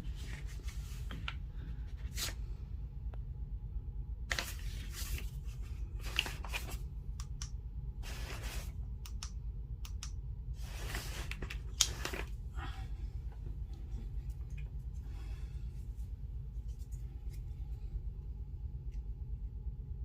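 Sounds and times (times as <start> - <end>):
steady low hum: 0.0 - 20.0
hands rustling wires: 10.6 - 18.3.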